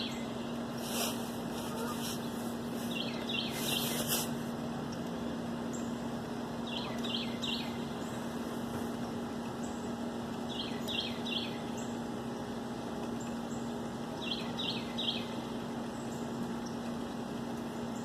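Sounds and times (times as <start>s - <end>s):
songbird chirping: 0.0s - 4.3s, 4.9s - 8.4s, 9.4s - 12.0s, 13.1s - 16.9s
outdoor background noise: 0.0s - 18.0s
steady low hum: 0.0s - 18.0s.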